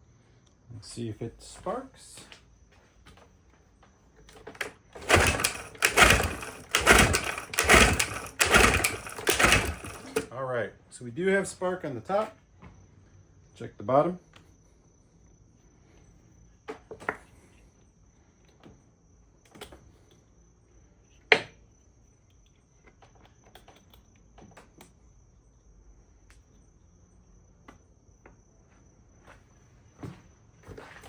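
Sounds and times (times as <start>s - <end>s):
tools clicking and knocking: 4.3s - 10.3s.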